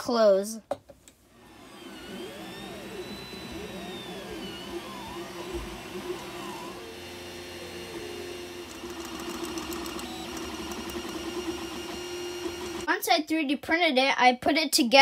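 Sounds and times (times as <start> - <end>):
stepper motors whining: 1.4 - 12.9
fine rapid ticking: 8.7 - 11.4.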